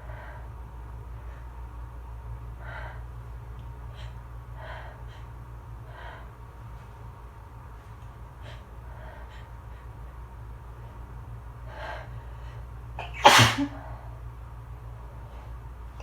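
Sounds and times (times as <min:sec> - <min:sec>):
loud sneeze: 0:13.0 - 0:13.8.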